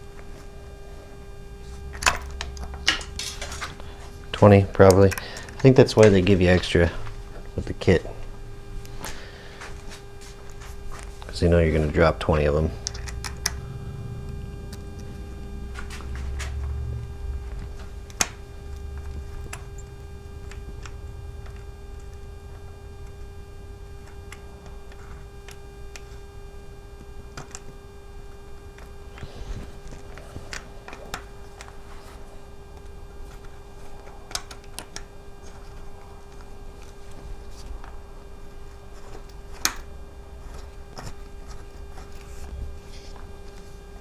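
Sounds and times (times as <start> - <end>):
steady electrical hum: 0.0 - 44.0
metal parts clicking: 12.8 - 13.6, 38.9 - 43.2.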